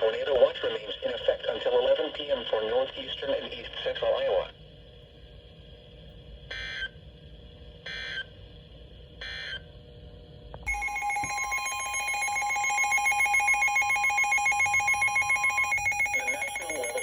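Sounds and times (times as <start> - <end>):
short data tone bursts: 10.7 - 17.0
two-tone attention signal: 10.7 - 17.0.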